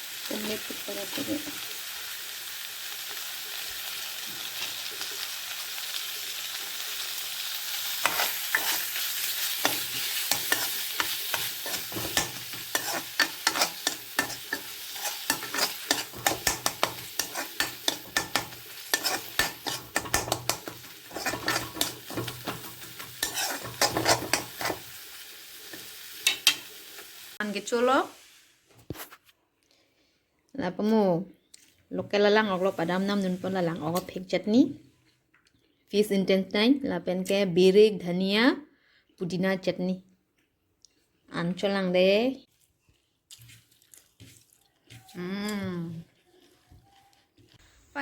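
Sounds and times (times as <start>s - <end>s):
fish sizzling in a frying pan: 0.0s - 28.6s
spatula scraping a pan: 7.7s - 25.0s, 43.4s - 45.2s.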